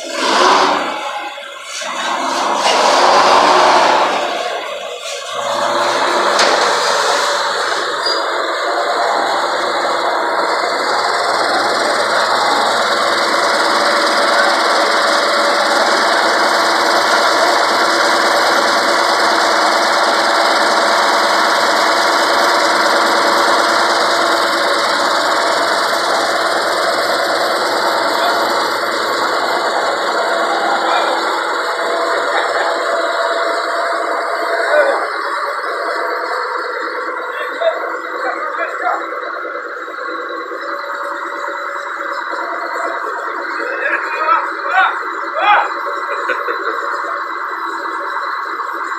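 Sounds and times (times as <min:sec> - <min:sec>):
diesel engine running steadily: 0:00.0 - 0:48.9.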